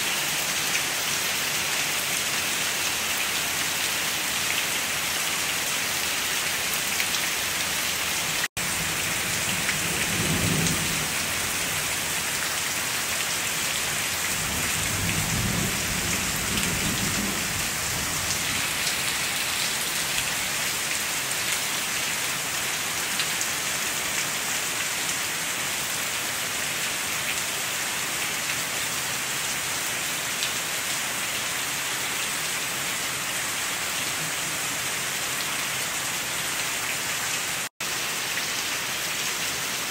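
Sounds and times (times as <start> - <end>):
rain hissing: 0.0 - 21.4.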